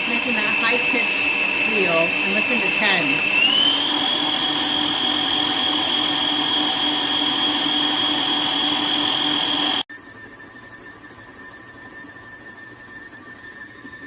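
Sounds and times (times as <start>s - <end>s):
stand mixer motor squealing: 0.0s - 9.9s.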